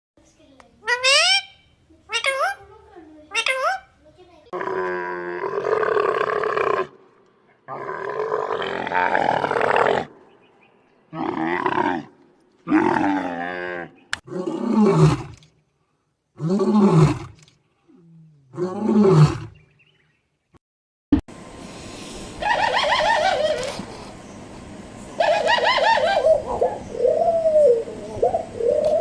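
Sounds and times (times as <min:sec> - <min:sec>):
big cat roaring: 0:04.6 - 0:07.0, 0:07.7 - 0:10.1, 0:11.1 - 0:15.4, 0:16.4 - 0:19.6.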